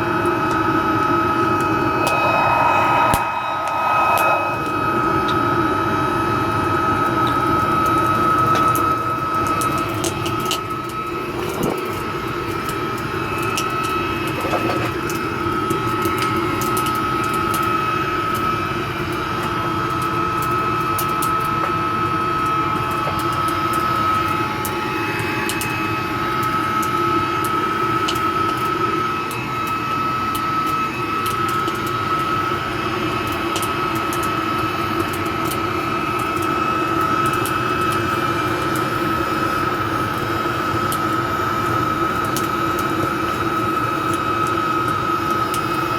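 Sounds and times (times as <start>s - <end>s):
steady high whine: 1.4s - 5.8s
rush of forced air and flame: 1.8s - 5.2s.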